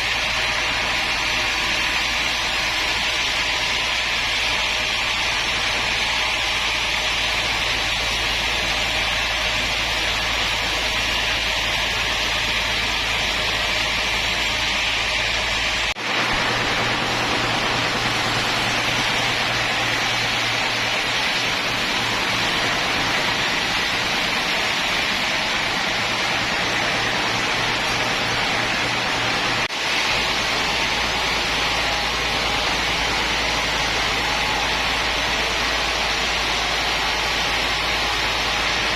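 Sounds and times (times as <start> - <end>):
woodworking machinery whooshing: 0.0 - 38.9.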